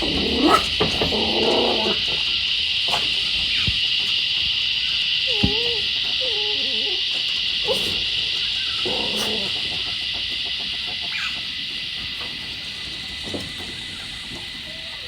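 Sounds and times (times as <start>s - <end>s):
wavering animal call: 0.0s - 3.9s, 4.7s - 11.6s
faint calls and clicks: 0.0s - 15.0s
insects droning: 0.0s - 15.0s.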